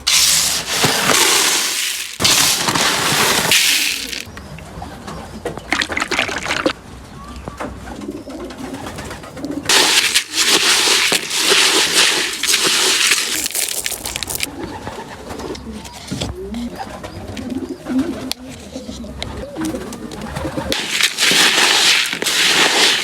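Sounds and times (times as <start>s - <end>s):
pigeons cooing: 14.5s - 20.8s.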